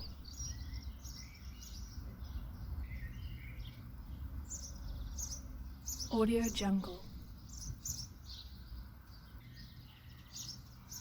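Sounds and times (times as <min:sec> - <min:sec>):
songbirds chirping and singing: 0:00.0 - 0:11.0.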